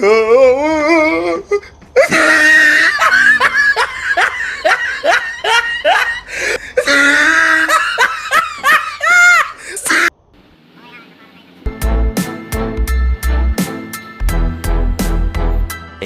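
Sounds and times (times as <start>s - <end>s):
wavering drawn-out vocal cry: 0.0s - 10.1s
hearty laughter: 2.0s - 10.1s.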